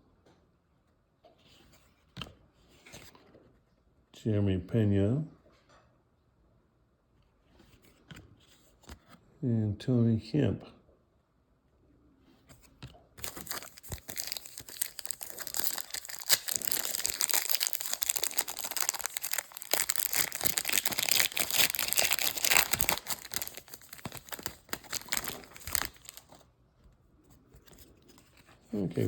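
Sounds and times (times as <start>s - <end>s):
foil wrapper tearing and crinkling: 13.2s - 26.4s.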